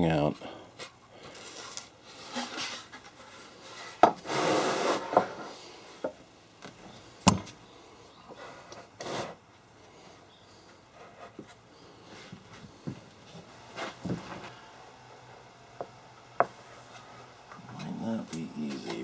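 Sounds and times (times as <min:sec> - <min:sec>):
hand tool scraping wood: 0:01.3 - 0:05.8, 0:08.4 - 0:09.4.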